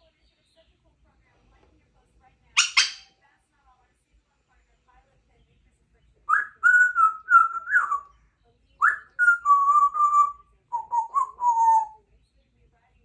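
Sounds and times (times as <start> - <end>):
parrot whistling: 2.6 - 3.1, 6.3 - 8.0, 8.8 - 12.0.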